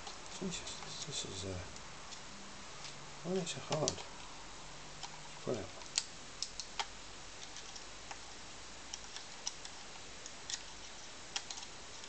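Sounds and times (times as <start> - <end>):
steady low hiss: 0.0 - 12.0
faint clicks and taps: 1.7 - 4.3.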